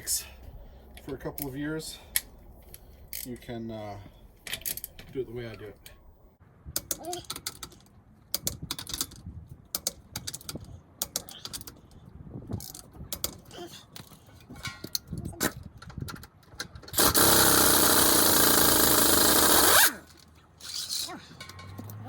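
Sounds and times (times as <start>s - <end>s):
tools and lug nuts clinking: 6.8s - 17.4s, 19.8s - 22.0s
impact wrench running: 17.0s - 20.1s.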